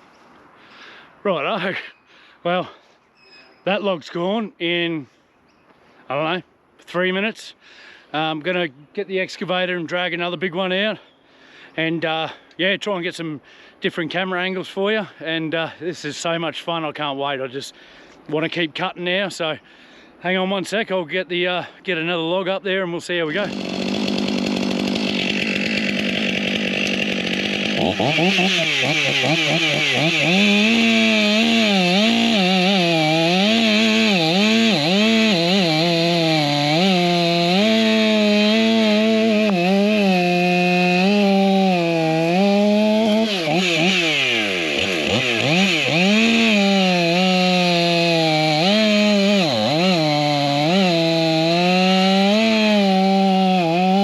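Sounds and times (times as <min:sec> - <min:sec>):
chainsaw cutting a log: 0:23.3 - 0:54.0.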